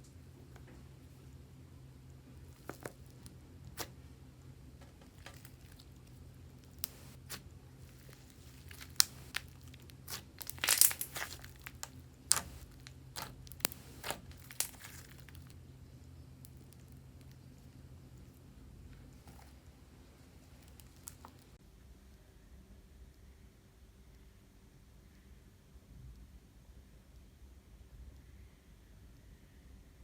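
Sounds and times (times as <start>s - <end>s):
slime popping and crackling: 5.1s - 15.6s.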